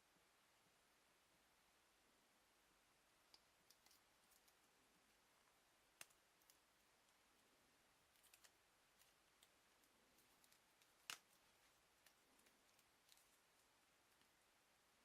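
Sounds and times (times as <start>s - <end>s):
faint plastic clicks: 3.2s - 4.7s, 5.4s - 7.5s, 8.1s - 14.4s.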